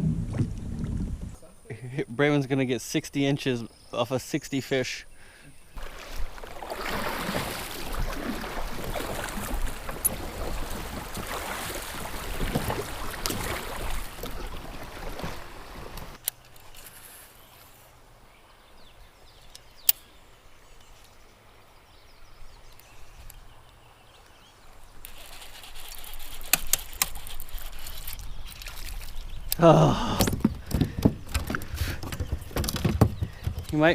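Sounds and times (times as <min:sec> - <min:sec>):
river water rushing and splashing: 0:05.8 - 0:16.2
sharp knocks on kayak: 0:30.1 - 0:33.8.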